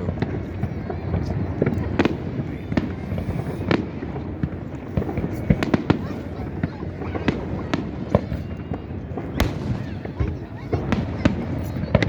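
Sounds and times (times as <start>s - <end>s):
fireworks booms and bangs: 0.0s - 12.0s.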